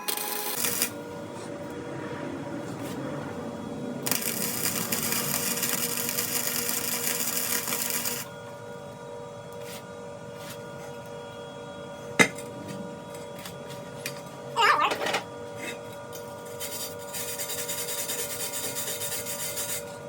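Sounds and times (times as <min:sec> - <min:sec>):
welding arc crackling: 0:00.0 - 0:01.1, 0:04.0 - 0:08.3.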